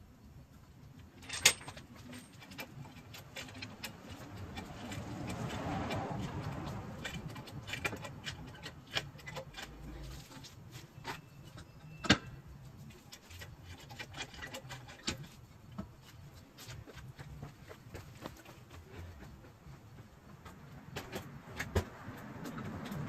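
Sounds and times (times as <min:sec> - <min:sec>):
tools and metal parts clicking: 0:01.0 - 0:05.6, 0:06.2 - 0:12.2, 0:13.0 - 0:15.4.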